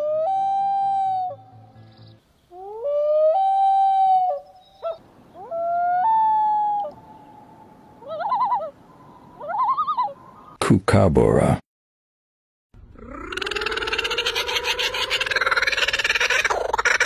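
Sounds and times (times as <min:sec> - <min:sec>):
loon tremolo calls: 0:00.0 - 0:10.6, 0:13.0 - 0:17.0
loon wailing: 0:02.6 - 0:10.3, 0:13.0 - 0:17.0.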